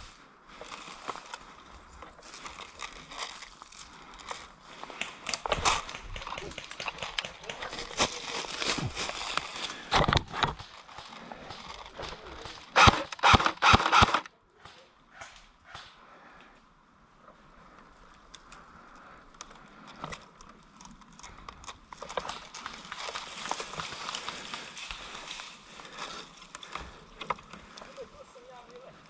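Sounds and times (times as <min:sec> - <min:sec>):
rustling and crunching in brush: 0:00.0 - 0:12.8, 0:22.0 - 0:29.0.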